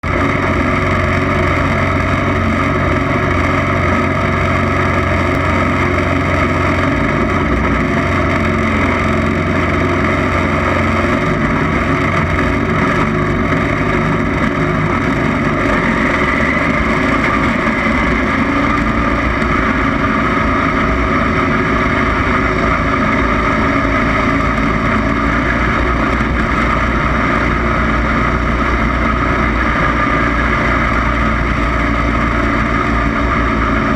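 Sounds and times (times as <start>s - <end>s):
lawn mower engine revving: 0.0s - 33.9s.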